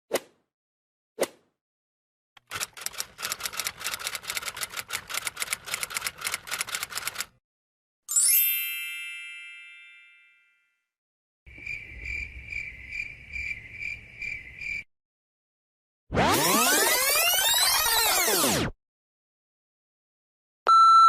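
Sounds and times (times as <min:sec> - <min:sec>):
typewriter keys clattering: 0:02.4 - 0:07.3.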